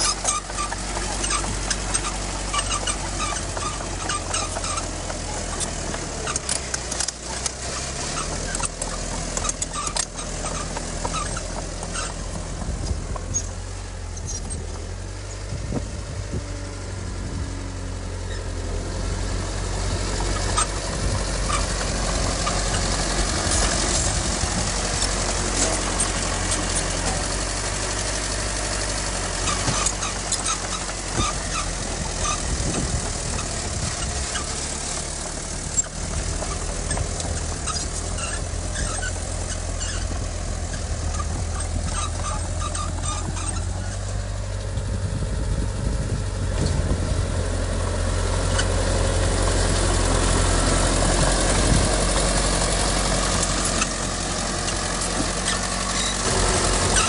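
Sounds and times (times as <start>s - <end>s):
machinery clanks: 0.0s - 15.5s, 20.0s - 44.9s
diesel engine drone: 0.0s - 57.0s.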